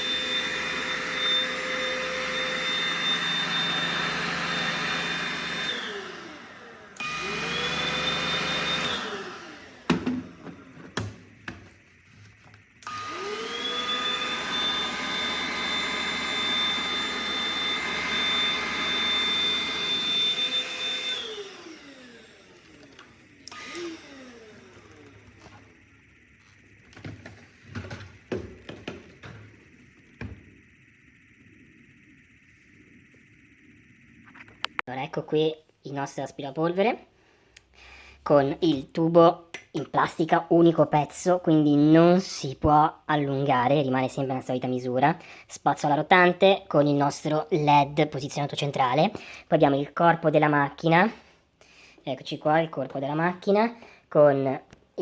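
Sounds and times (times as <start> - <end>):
vacuum cleaner motor whining: 0.0 - 34.8.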